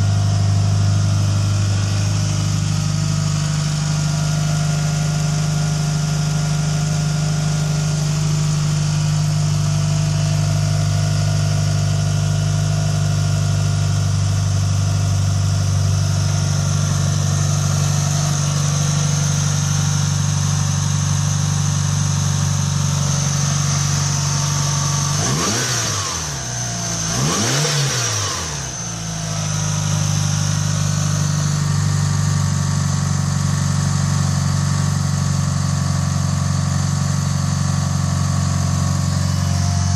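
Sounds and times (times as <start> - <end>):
car engine idling: 0.0 - 39.9
engine revving: 15.4 - 32.0.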